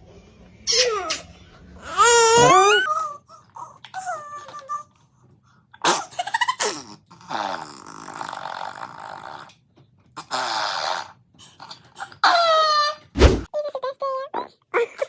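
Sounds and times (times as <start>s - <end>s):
baby farting: 5.8s - 9.6s, 10.2s - 12.3s.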